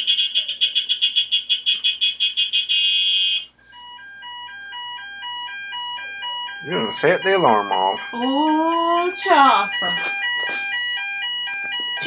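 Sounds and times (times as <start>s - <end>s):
electronic beeping tune: 3.8s - 12.0s.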